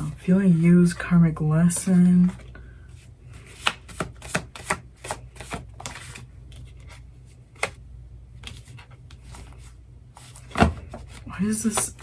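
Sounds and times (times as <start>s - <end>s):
cards shuffled on a table: 3.4s - 7.8s.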